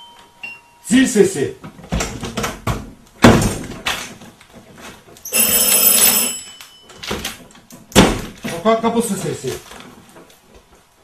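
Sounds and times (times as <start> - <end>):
bell ringing: 0.0 - 0.9, 5.3 - 7.0
handling knocks and thump: 1.6 - 5.1, 7.0 - 10.9.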